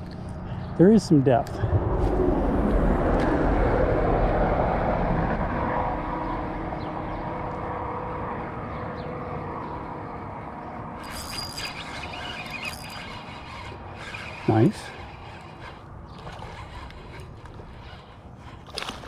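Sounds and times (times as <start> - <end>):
passing vehicle rumble: 0.3 - 11.0.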